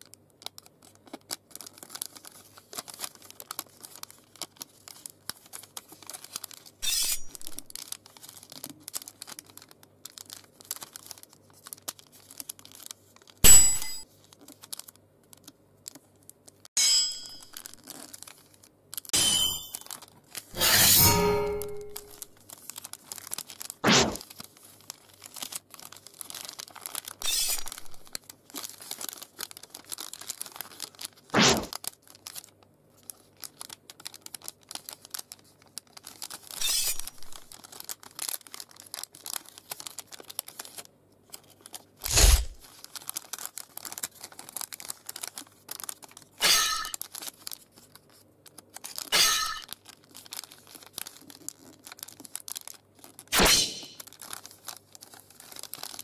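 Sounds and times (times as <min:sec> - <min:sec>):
paper crinkling and rustling: 0:00.0 - 0:13.4, 0:14.0 - 0:16.7, 0:17.4 - 0:20.6, 0:21.6 - 0:56.0
sword swoosh sound effect: 0:20.6 - 0:22.0, 0:42.1 - 0:42.6, 0:53.4 - 0:54.0.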